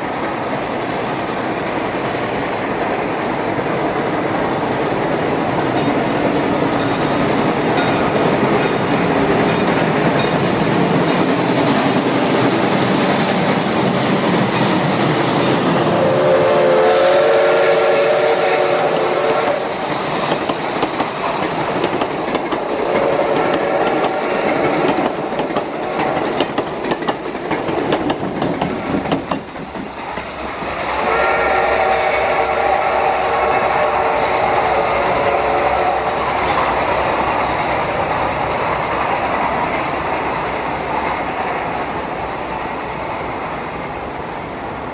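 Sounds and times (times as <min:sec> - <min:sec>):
steam locomotive running: 0:00.0 - 0:44.9
steam whistle chord: 0:15.8 - 0:19.8, 0:30.9 - 0:36.2
wheels clicking over rail joints: 0:20.2 - 0:30.7.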